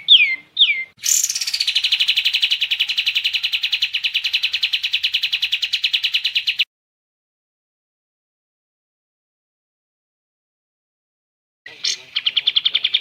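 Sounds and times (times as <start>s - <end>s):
bird song whistle and trill: 0.0s - 6.7s, 11.7s - 13.0s.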